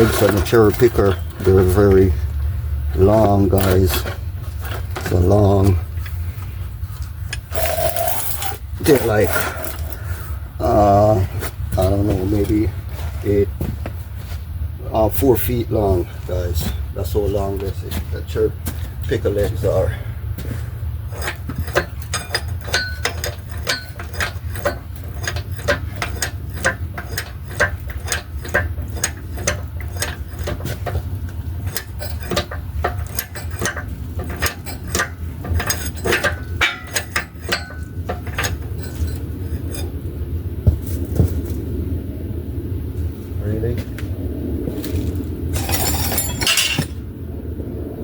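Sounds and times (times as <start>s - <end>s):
metallic clicking and clinking: 7.3s - 10.0s, 21.1s - 39.9s
low hum: 18.4s - 48.0s.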